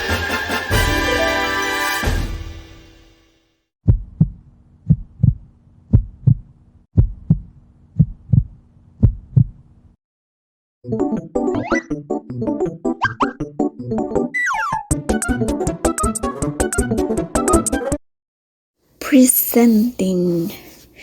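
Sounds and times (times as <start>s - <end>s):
theme music with held notes: 0.0s - 3.2s, 15.0s - 18.0s
heartbeat thumps: 3.9s - 9.6s.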